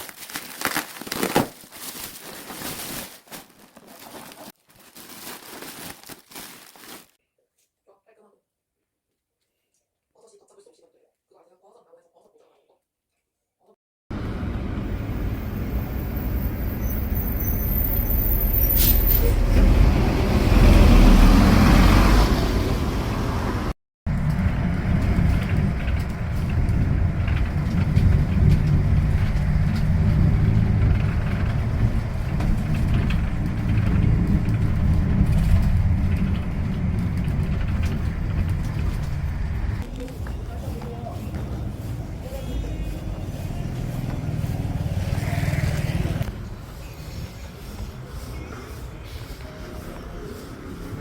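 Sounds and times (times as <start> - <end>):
vehicle engine and road noise: 14.1 - 51.0.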